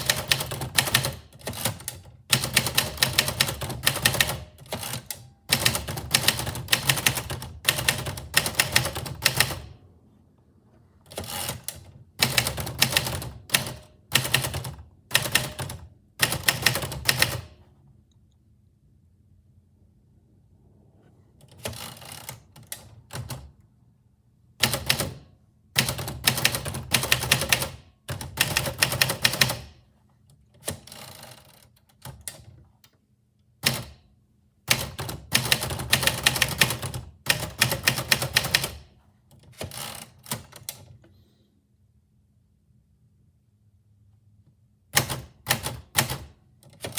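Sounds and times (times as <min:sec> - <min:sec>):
typewriter keys typing: 0:00.0 - 0:09.8, 0:11.1 - 0:17.6, 0:24.6 - 0:29.8, 0:34.7 - 0:40.9, 0:45.0 - 0:46.9.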